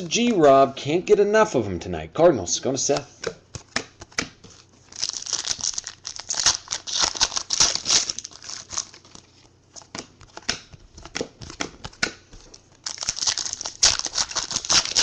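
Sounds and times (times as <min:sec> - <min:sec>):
cards clicking and rustling: 0:02.9 - 0:15.0
foil wrapper crinkling and tearing: 0:04.9 - 0:09.4, 0:12.8 - 0:15.0.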